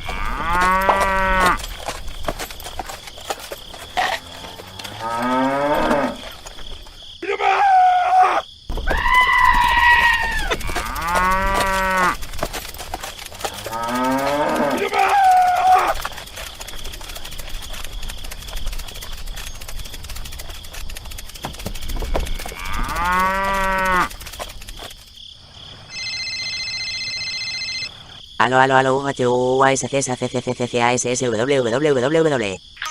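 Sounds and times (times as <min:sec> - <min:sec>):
cattle mooing: 0:00.0 - 0:01.7, 0:03.7 - 0:06.4, 0:09.4 - 0:12.2, 0:13.4 - 0:16.0, 0:22.0 - 0:24.1.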